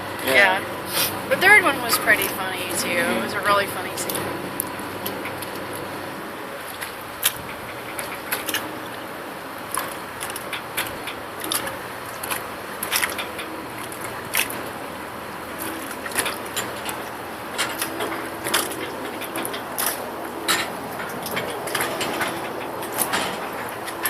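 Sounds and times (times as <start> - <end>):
water taxi rushing noise: 0.0 - 24.0
sharp clicks and rattles: 15.6 - 24.0.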